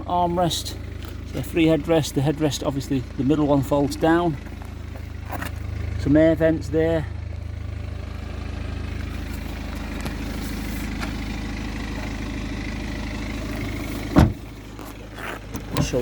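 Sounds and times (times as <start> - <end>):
diesel engine idling: 0.0 - 16.0
loud thump: 14.1 - 14.5.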